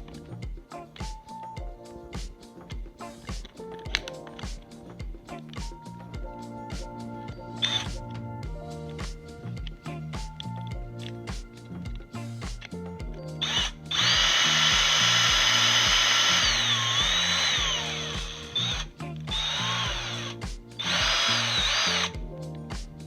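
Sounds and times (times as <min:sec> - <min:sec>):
music with steady beat: 0:00.0 - 0:23.0
electric drill whining: 0:07.6 - 0:07.9, 0:13.4 - 0:22.2.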